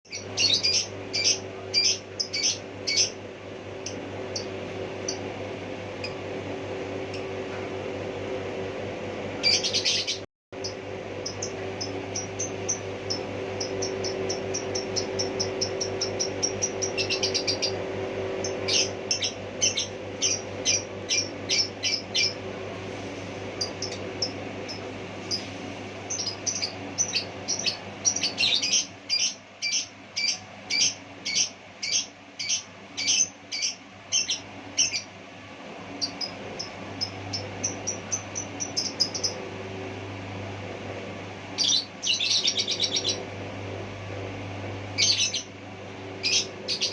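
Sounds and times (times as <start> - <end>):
bird chirping: 0.1 - 3.2, 9.4 - 17.8, 18.4 - 22.4, 26.1 - 35.1, 36.0 - 39.4, 41.6 - 43.2, 45.0 - 45.5
steady low hum: 0.1 - 46.9.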